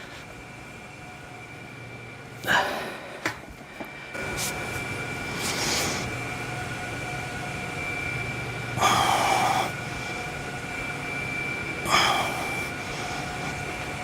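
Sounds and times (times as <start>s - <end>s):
steady background hum: 0.0s - 14.0s
person exhaling hard: 2.4s - 3.3s, 11.9s - 12.8s.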